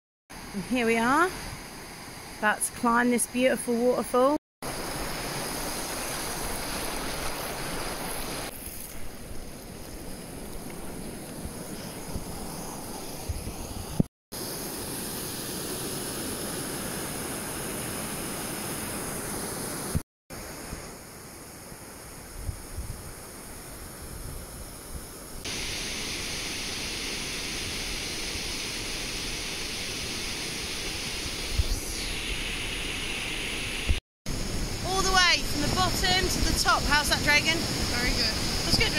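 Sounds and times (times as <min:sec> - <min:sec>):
waterfall rushing: 0:04.6 - 0:08.5, 0:33.8 - 0:38.9.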